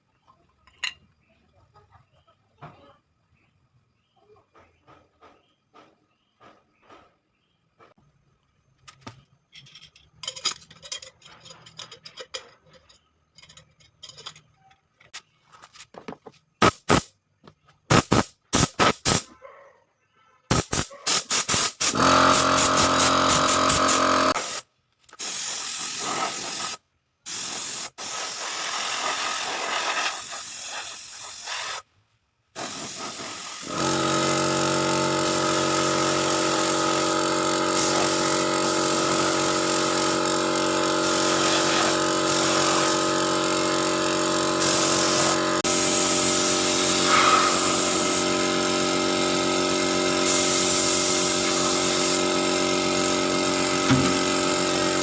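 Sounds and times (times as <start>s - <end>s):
air compressor running: 16.6s - 17.1s, 17.9s - 19.2s, 20.5s - 31.8s, 32.6s - 55.0s
spray gun hissing: 17.9s - 19.2s, 20.5s - 31.8s, 32.6s - 55.0s.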